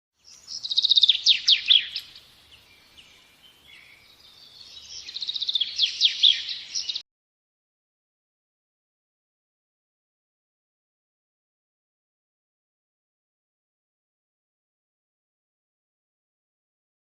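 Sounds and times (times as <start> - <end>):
songbird singing trills: 0.2 - 7.0.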